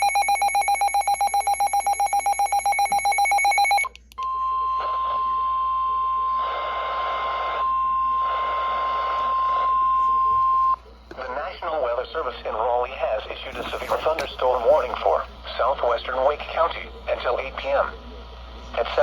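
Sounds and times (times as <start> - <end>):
pulsing alarm beeps: 0.0 - 6.0
steady alarm tone: 0.0 - 6.0.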